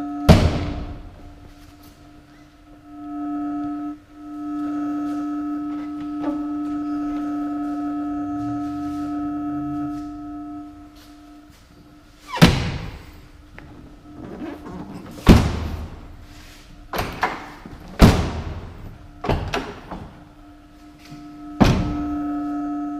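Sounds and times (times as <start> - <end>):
sustained musical tone: 0.0 - 22.9
vehicle doors shutting: 12.2 - 20.3, 21.6 - 22.2.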